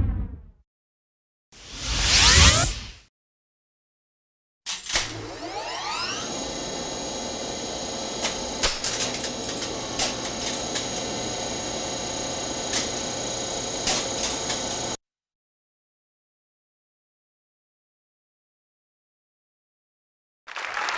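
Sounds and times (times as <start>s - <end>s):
machine spinning up whine: 1.6s - 2.9s, 5.0s - 15.0s.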